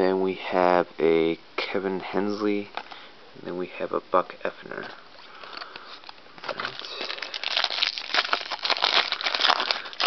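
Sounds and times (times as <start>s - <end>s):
plastic wrapper crinkling and tearing: 5.4s - 10.0s.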